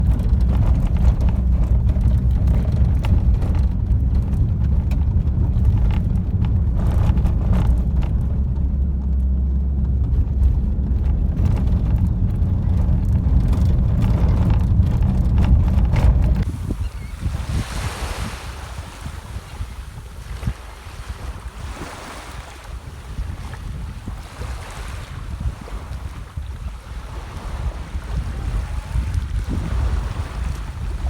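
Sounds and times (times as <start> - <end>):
small knocks from bumpy road: 0.0 - 16.6
car road noise rumble: 0.0 - 31.0.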